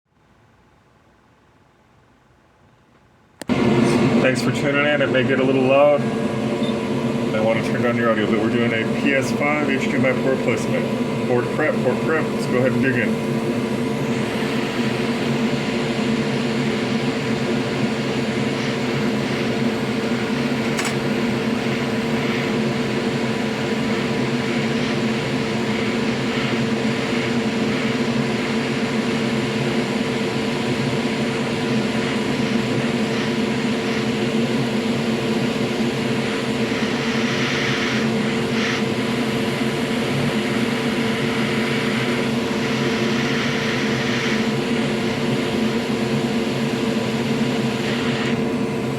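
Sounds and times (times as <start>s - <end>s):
click: 2.9s - 3.5s
electric motor humming: 3.5s - 48.9s
hissing noise: 36.1s - 45.0s.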